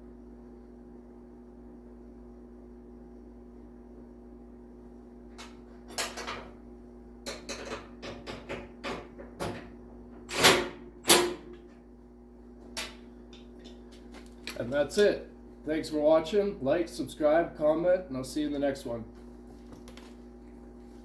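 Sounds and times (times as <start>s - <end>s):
steady low hum: 0.0s - 21.0s
tools and metal parts clanking: 5.4s - 6.5s.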